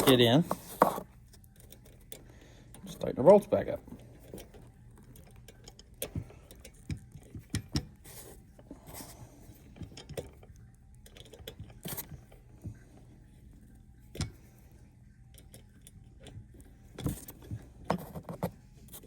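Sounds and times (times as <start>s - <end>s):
faint steady hum: 0.0s - 19.0s
small metallic clicks and taps: 4.2s - 8.1s, 14.1s - 14.5s.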